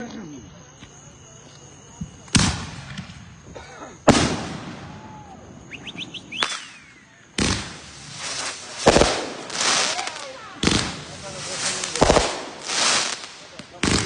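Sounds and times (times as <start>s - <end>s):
firework bangs: 2.3s - 14.0s
whistle falling in pitch: 4.9s - 7.2s.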